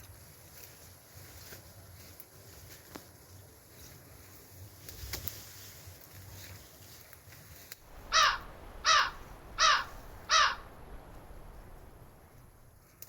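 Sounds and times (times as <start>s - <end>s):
bird harsh calls: 7.8s - 12.7s.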